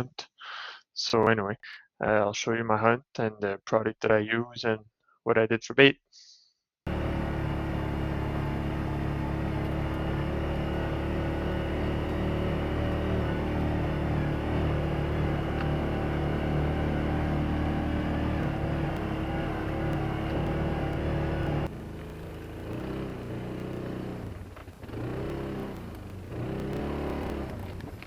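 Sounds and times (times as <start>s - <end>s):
steady low drone: 6.9s - 24.3s
vehicle engine revving: 6.9s - 28.0s.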